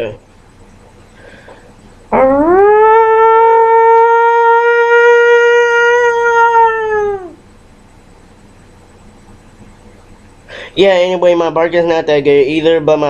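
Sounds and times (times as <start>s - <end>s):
man imitating wolf howl: 2.1s - 7.4s.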